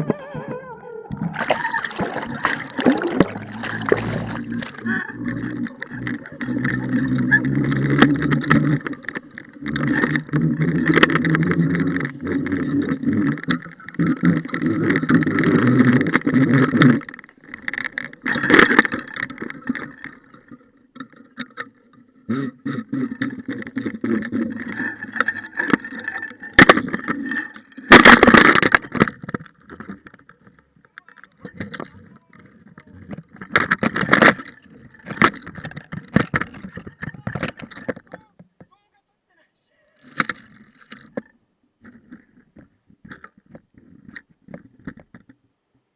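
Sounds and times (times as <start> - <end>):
underwater water rushing and gurgling: 1.1 - 28.8.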